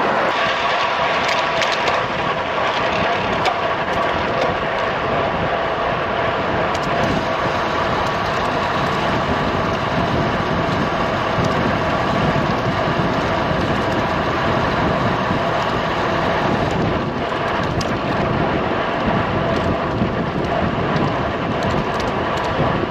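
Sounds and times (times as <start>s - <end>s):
wind rushing over microphone: 0.0s - 22.9s.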